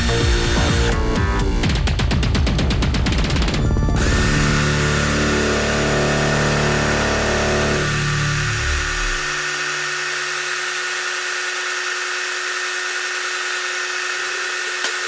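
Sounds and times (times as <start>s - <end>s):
low motor hum: 3.4s - 11.8s
power tool motor whining: 3.9s - 15.0s.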